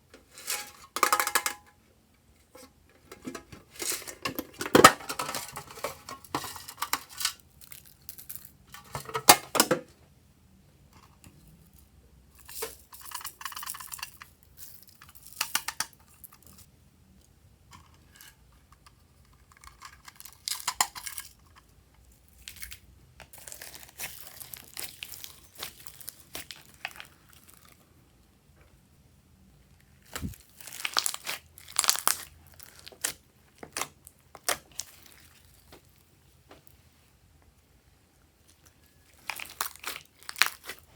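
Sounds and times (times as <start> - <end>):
slime squishing by hand: 22.4 - 27.8, 30.0 - 36.0, 38.4 - 40.9.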